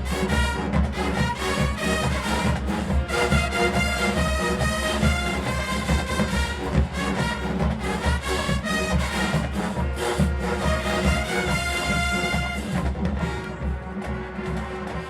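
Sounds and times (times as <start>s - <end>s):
brass section playing: 0.0s - 15.0s
steady drum beat: 0.0s - 15.0s.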